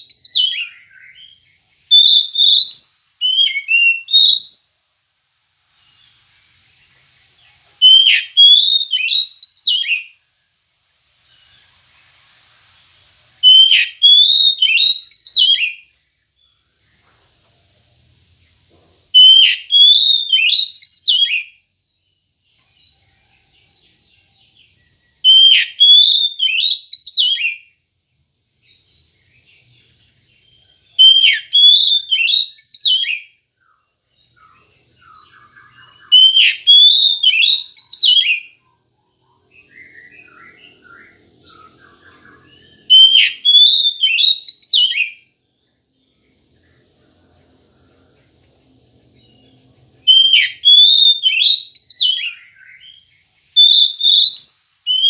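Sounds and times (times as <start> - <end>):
bird singing whistled phrase: 0.0 - 4.8, 7.2 - 10.1, 13.4 - 15.9, 19.2 - 21.6, 24.2 - 27.7, 30.9 - 33.8, 34.4 - 38.6, 39.5 - 45.2, 50.0 - 55.0
soft bird twittering: 0.0 - 4.8, 11.2 - 55.0.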